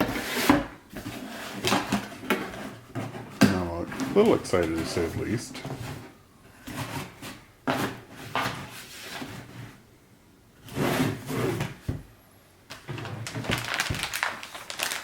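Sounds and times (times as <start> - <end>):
packaging sliding and scraping: 0.0 - 3.3, 3.9 - 9.8.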